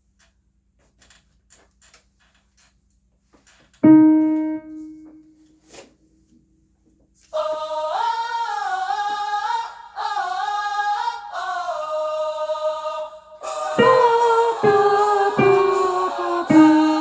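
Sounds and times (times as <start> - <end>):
woman singing unaccompanied: 13.6 - 17.0.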